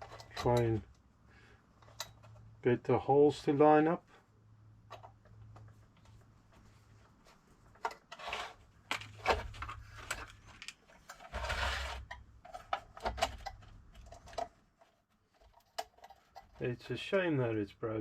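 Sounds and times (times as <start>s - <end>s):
fan casing clicks and scrapes: 0.0s - 1.0s, 1.8s - 2.6s, 4.8s - 17.2s.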